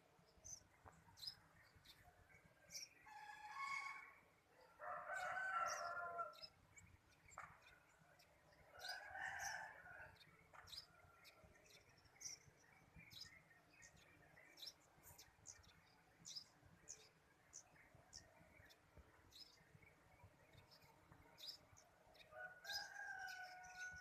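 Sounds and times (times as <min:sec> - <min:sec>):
small birds chirping: 0:00.0 - 0:24.0
rooster crowing: 0:03.1 - 0:04.2, 0:04.8 - 0:06.4, 0:22.3 - 0:24.0.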